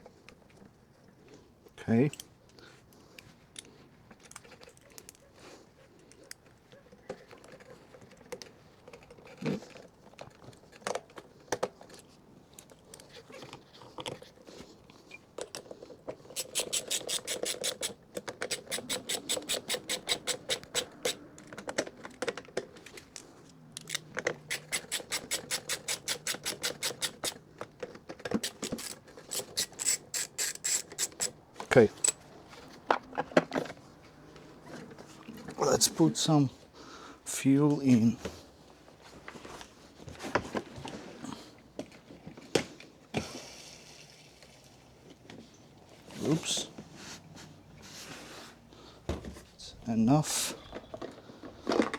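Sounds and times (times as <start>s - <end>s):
parts knocking and tapping: 15.4s - 23.0s
ratchet wrench clicking: 16.4s - 21.2s, 24.5s - 27.4s, 28.4s - 31.4s.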